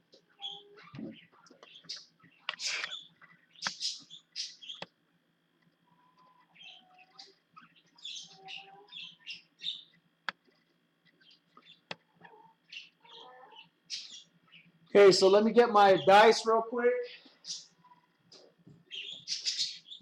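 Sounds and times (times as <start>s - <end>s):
small bird chirping: 0.1s - 15.0s, 17.0s - 20.0s.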